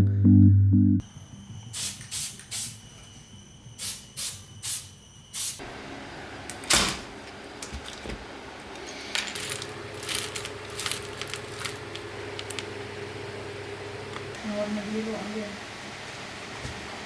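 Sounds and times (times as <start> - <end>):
faint high whine: 1.0 - 5.6.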